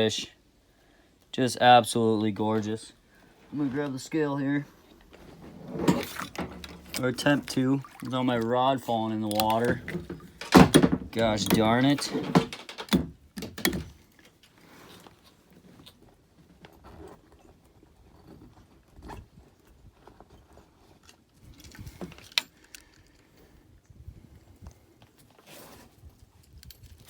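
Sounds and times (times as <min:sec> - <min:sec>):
gear knocks and rattles: 0:04.9 - 0:07.9, 0:08.8 - 0:14.5.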